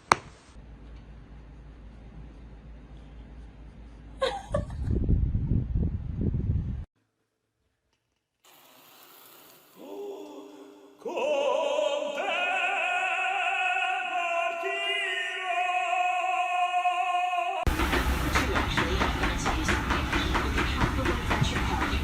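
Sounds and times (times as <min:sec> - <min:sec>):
operatic singing with vibrato: 0:09.8 - 0:22.0.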